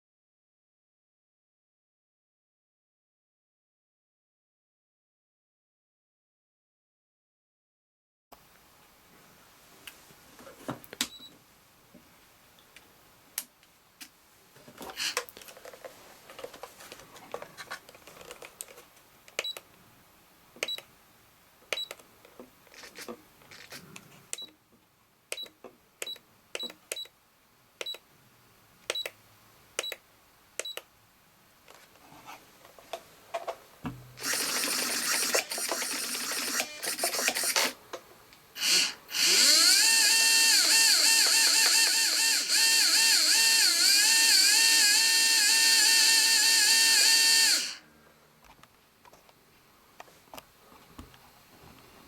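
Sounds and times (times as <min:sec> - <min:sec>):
electric motor whirring and whining: 0:34.2 - 0:37.7, 0:38.6 - 0:47.8.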